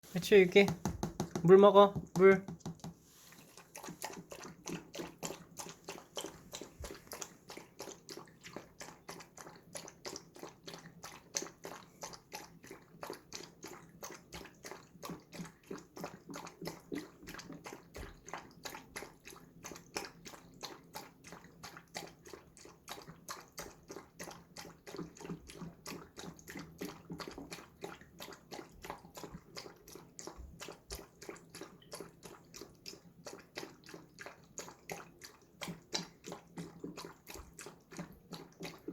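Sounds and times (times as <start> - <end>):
dog lapping water: 0.1 - 38.9.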